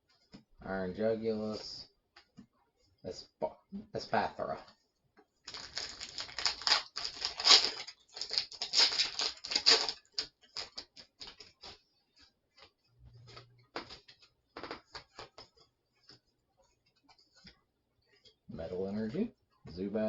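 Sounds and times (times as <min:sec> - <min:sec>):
foil wrapper crinkling: 0:05.5 - 0:11.8.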